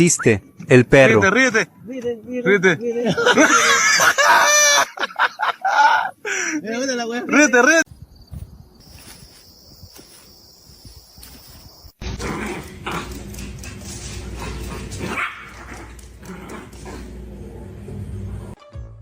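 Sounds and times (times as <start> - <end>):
dog barking: 15.0 - 15.9.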